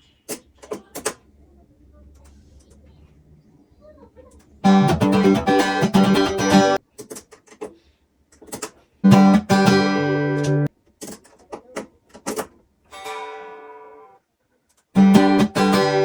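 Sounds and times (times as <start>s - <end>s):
guitar chords strummed: 4.6s - 6.8s, 9.0s - 10.7s, 12.9s - 14.2s, 15.0s - 16.0s
guitar string plucks: 4.7s - 6.8s, 9.1s - 10.7s, 15.0s - 16.0s.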